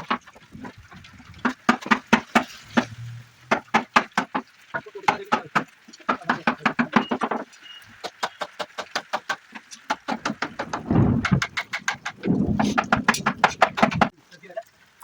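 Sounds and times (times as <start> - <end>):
hammer knocking on wood: 5.1 - 14.1.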